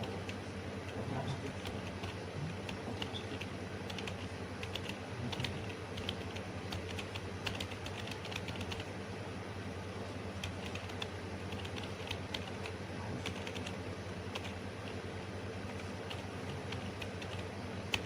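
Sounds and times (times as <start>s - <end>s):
steady low hum: 0.0s - 18.0s
keyboard keystroke clicks: 2.0s - 8.8s.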